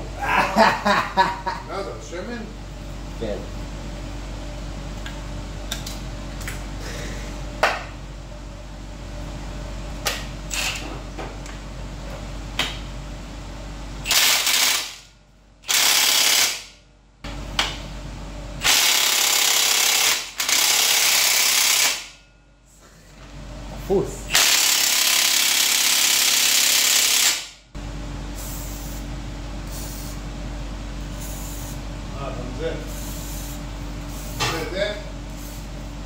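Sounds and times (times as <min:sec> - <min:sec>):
steady low hum: 0:00.0 - 0:24.9, 0:27.4 - 0:36.0
power tool bursts: 0:14.0 - 0:15.0, 0:15.6 - 0:16.7, 0:18.6 - 0:22.2, 0:24.3 - 0:27.6.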